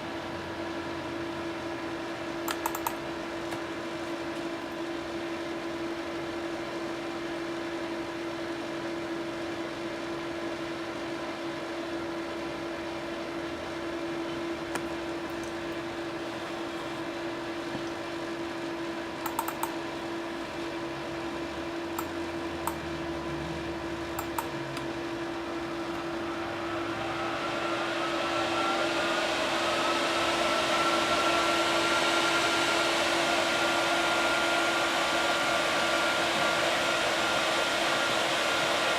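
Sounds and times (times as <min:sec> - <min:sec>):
cooling fans humming: 0:00.0 - 0:38.9
fans spinning up with rising whine: 0:00.0 - 0:38.9
sharp clicks: 0:02.5 - 0:03.0, 0:19.2 - 0:19.8, 0:24.2 - 0:24.5.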